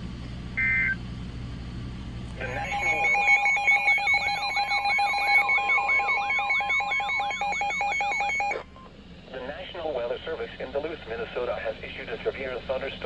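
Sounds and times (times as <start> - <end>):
electronic alarm with warbling sweep: 2.4 - 8.6.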